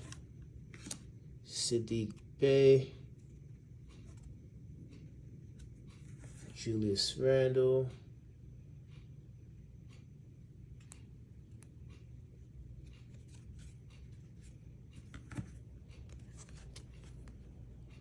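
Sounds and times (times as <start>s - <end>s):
trading cards clicking and rubbing: 10.8s - 17.7s.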